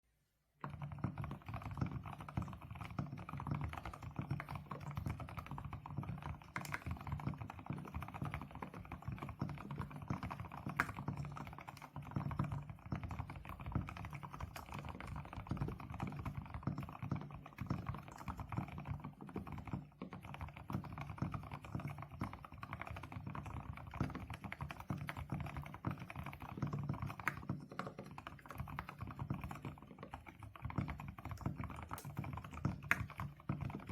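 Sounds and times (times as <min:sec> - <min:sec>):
fast typing on mechanical keyboard: 0:00.6 - 0:33.9.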